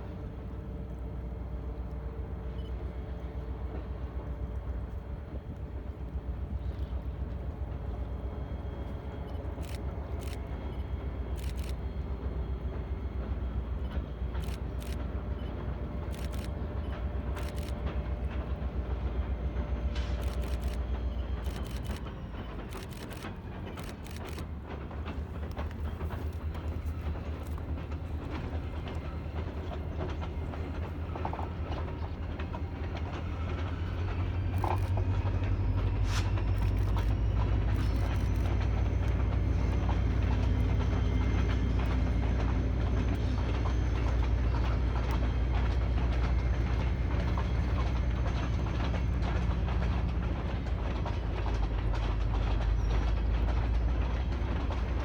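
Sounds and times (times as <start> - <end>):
train rumbling by: 0.0 - 55.0
wheel clicks over rail joints: 20.0 - 55.0.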